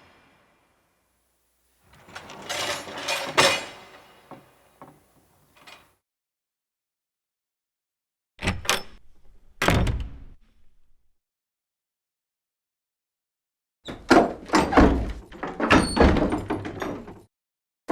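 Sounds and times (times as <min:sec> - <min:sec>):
door banging shut: 0:02.0 - 0:05.8, 0:09.6 - 0:10.4
door clicks and rattles: 0:14.1 - 0:17.3.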